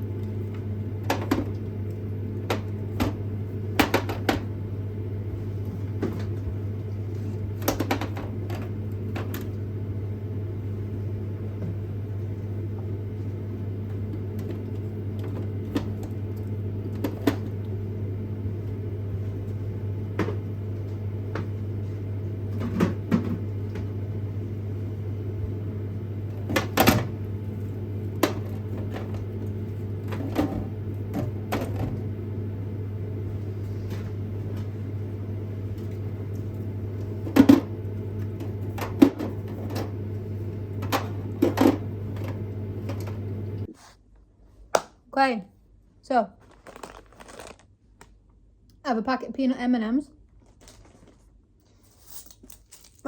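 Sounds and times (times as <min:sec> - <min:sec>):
low mechanical hum: 0:00.0 - 0:53.0.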